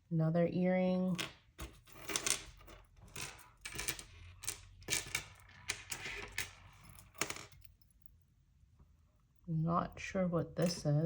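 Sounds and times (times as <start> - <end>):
metal jewelry clinking: 1.1 - 8.2, 10.5 - 11.0.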